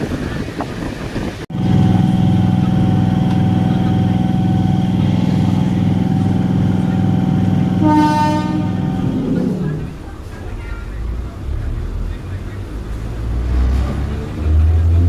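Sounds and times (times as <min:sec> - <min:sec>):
train traction motor whine: 0:01.5 - 0:10.1.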